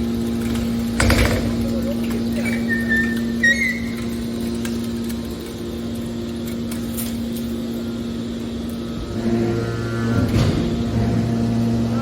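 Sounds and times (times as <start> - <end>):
hydraulic baler motor hum: 0.0 - 4.8, 7.9 - 12.0.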